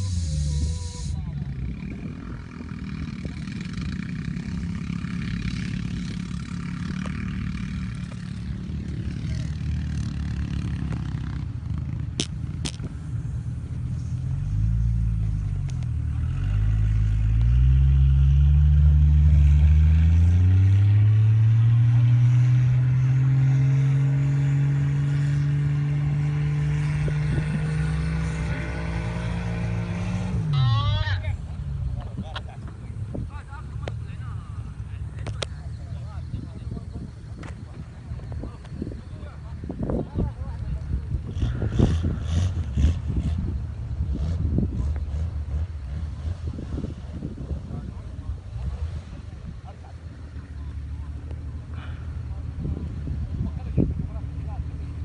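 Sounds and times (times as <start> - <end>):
vehicle engine revving: 0.0 - 55.0.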